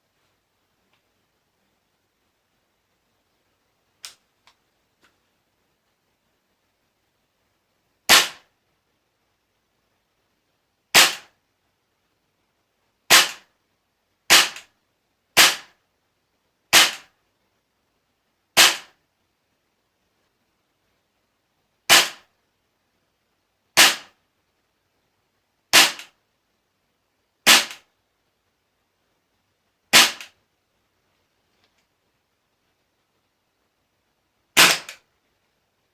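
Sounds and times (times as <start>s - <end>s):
airsoft gun shots: 8.1s - 8.5s, 10.9s - 11.4s, 13.1s - 13.5s, 14.3s - 14.7s, 15.4s - 15.8s, 16.7s - 17.1s, 18.6s - 19.0s, 21.9s - 22.3s, 23.8s - 24.2s, 25.7s - 26.2s, 27.4s - 27.9s, 29.9s - 30.4s, 34.6s - 35.0s.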